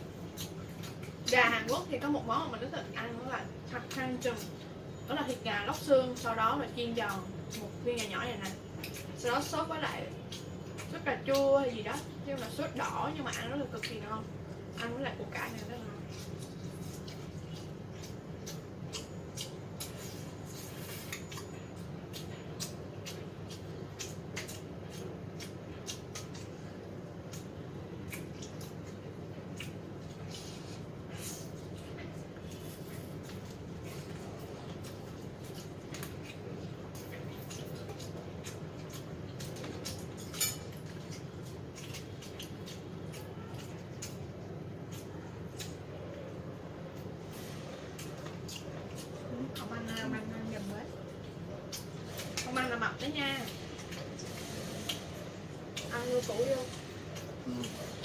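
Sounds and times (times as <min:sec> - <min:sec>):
chewing food: 0:00.0 - 0:58.0
low background hum: 0:00.0 - 0:58.0
dishes and cutlery clicking: 0:39.9 - 0:40.8.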